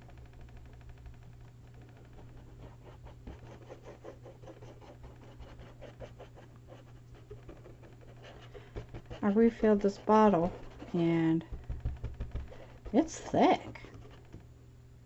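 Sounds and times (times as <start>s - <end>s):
light taps and scratches: 0.0s - 14.5s
steady low hum: 0.0s - 15.0s.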